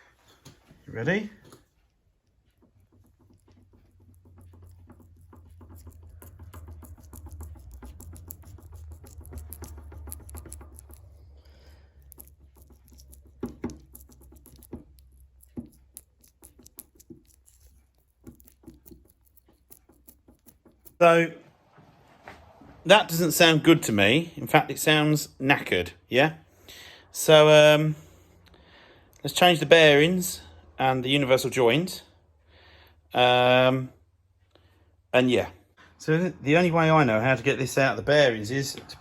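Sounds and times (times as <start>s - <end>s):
worn bearings rumbling and clicking: 2.1s - 21.0s.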